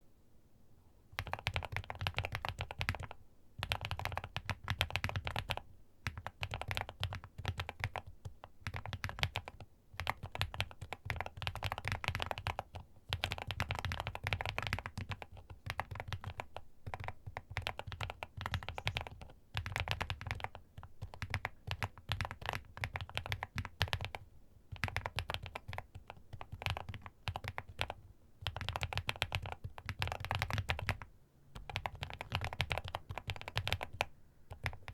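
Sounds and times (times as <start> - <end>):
mechanical keyboard typing: 1.2 - 34.9.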